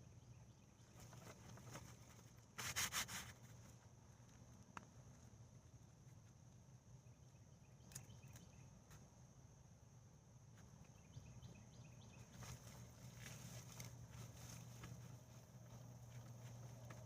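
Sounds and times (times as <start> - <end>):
rustling of soil and vines: 0.8 - 6.5, 12.2 - 17.0.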